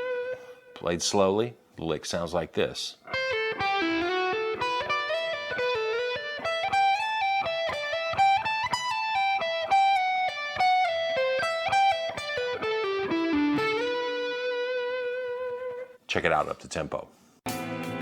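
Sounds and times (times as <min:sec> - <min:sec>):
electric guitar lead: 0:00.0 - 0:00.8, 0:03.0 - 0:16.0, 0:17.5 - 0:18.0.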